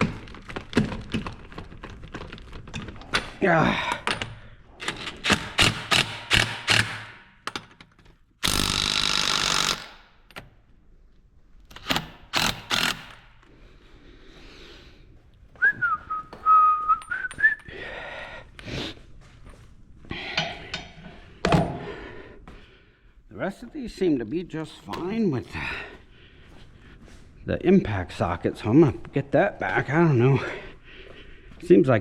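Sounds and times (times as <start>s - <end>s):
air impact wrench burst: 5.2s - 7.3s, 8.4s - 10.1s, 11.8s - 13.3s
person whistling a tune: 15.6s - 17.7s.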